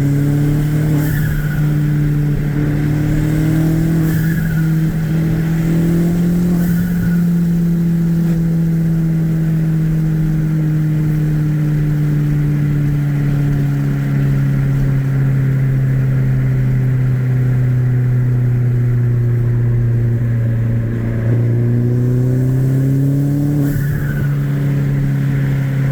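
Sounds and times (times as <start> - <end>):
car engine running: 0.0 - 25.9.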